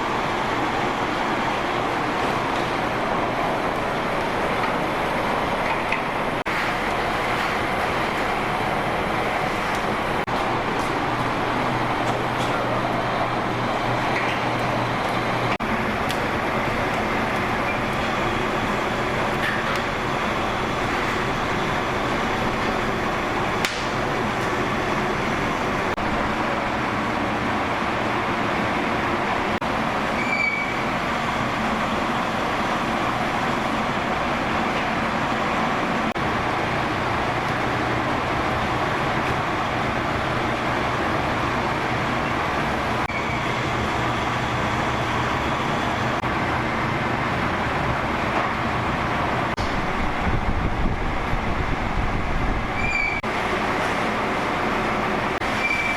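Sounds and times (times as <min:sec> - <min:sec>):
mechanical running noise with hum: 0:00.0 - 0:55.9
short high squeak: 0:30.2 - 0:30.8, 0:43.1 - 0:43.5, 0:52.8 - 0:53.2, 0:55.5 - 0:55.9.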